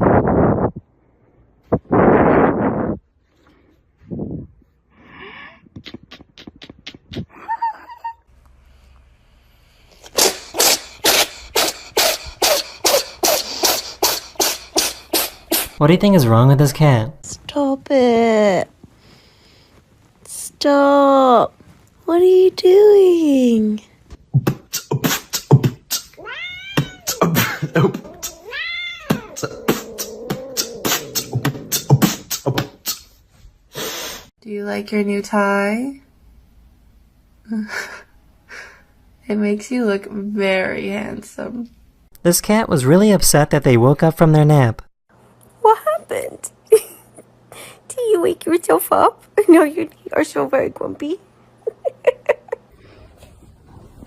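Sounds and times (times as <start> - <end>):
cat huffing: 10.0 - 15.8, 26.0 - 32.3
cat meowing: 26.2 - 27.2, 28.0 - 31.3.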